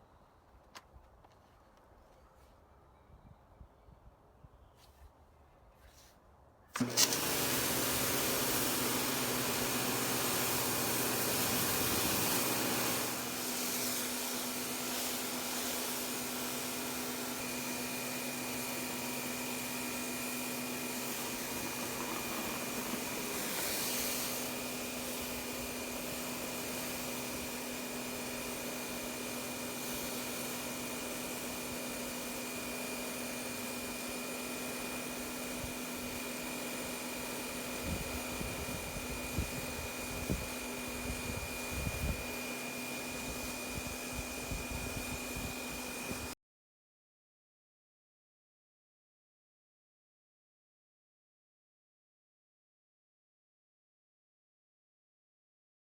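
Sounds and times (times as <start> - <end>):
pressure washer whirring: 6.8 - 46.4.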